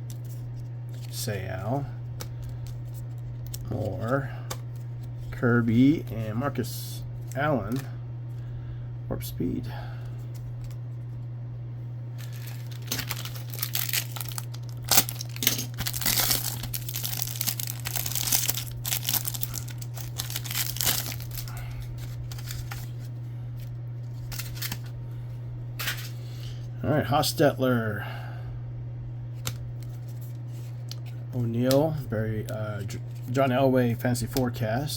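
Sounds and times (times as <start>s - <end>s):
steady low hum: 0.0s - 34.9s
card pack wrapper tearing and crinkling: 2.2s - 5.0s, 12.2s - 24.9s.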